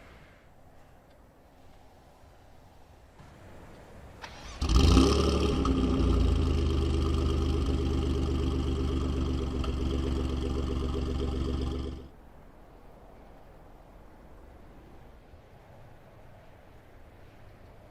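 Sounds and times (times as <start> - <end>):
car engine starting and idling: 4.1 - 12.1.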